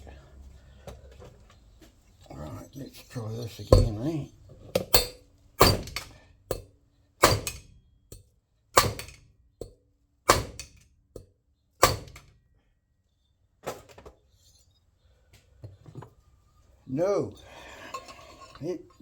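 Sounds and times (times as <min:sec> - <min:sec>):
hammer striking metal: 0:04.9 - 0:06.6, 0:07.2 - 0:07.6.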